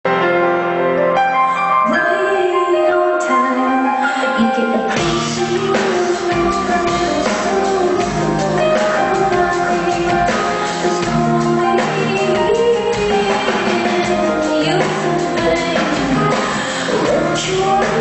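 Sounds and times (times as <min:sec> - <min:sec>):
live rock band playing: 0:00.1 - 0:18.0
woman singing: 0:01.8 - 0:18.0.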